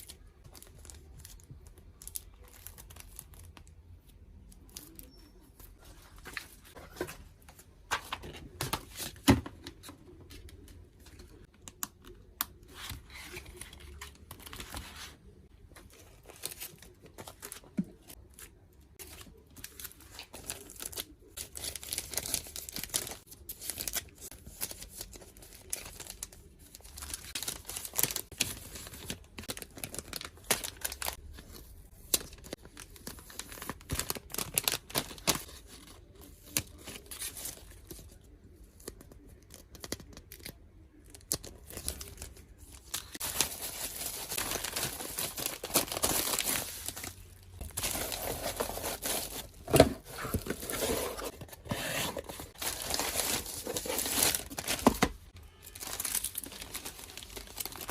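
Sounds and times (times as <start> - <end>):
wrapping crinkling: 19.0 - 37.6, 40.1 - 57.9.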